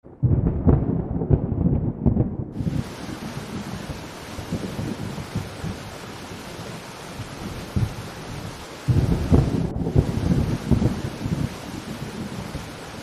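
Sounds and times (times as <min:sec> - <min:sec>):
loud low rumbling with thumps: 0:00.1 - 0:03.9, 0:08.9 - 0:11.6
wind noise: 0:00.1 - 0:13.0
rain: 0:01.4 - 0:13.0
soft low knocks: 0:07.7 - 0:08.1.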